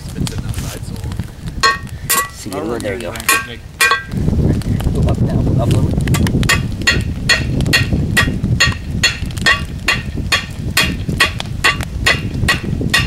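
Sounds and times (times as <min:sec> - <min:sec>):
hammer striking hot steel: 0:01.6 - 0:02.4, 0:03.0 - 0:04.2, 0:06.0 - 0:13.0.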